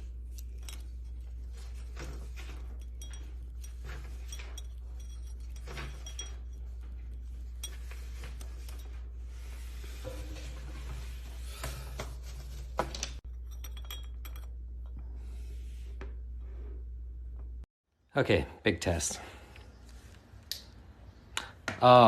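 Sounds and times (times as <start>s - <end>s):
glass and metal parts clinking: 0.0s - 9.1s, 13.3s - 14.9s.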